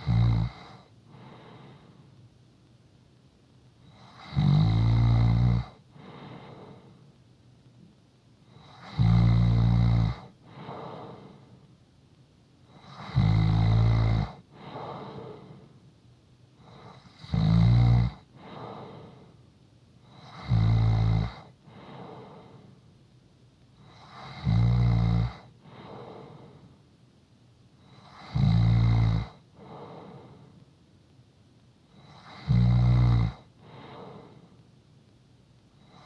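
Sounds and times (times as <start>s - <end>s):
faint breath: 0.8s - 2.2s, 5.9s - 7.2s, 10.4s - 11.7s, 14.5s - 15.9s, 18.3s - 20.3s, 21.4s - 23.0s, 25.5s - 26.9s, 29.5s - 30.7s, 33.6s - 34.8s
person snoring: 32.1s - 34.4s.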